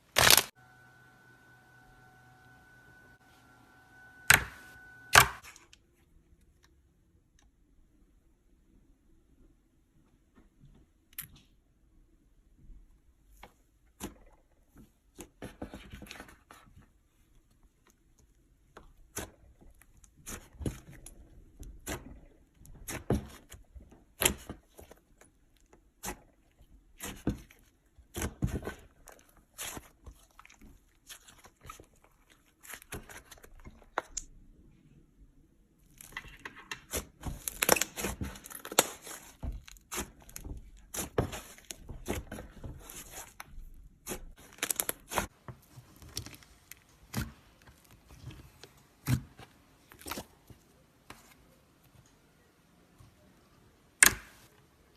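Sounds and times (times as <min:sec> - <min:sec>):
slime popping and crackling: 0:00.1 - 0:00.5.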